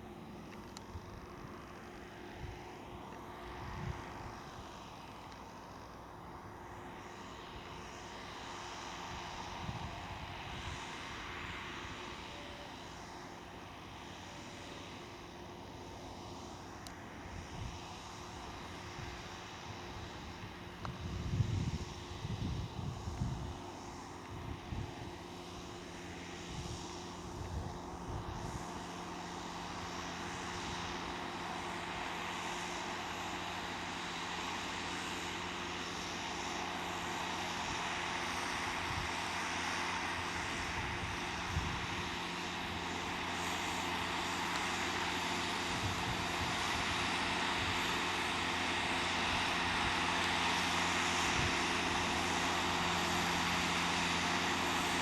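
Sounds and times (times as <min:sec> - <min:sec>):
tractor engine running: 0:18.0 - 0:55.0.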